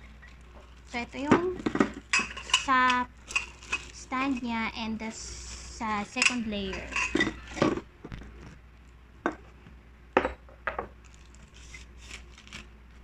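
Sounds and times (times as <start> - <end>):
grill stand parts knocking: 0.5 - 5.2, 5.8 - 8.6, 10.2 - 11.0.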